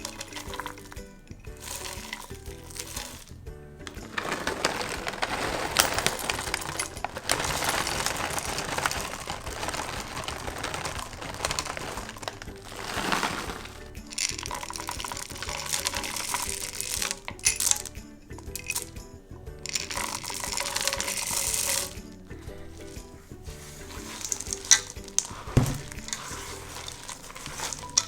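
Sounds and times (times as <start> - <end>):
dough being mixed in a bowl: 0.0 - 18.9, 19.7 - 28.0
background music: 0.0 - 28.0.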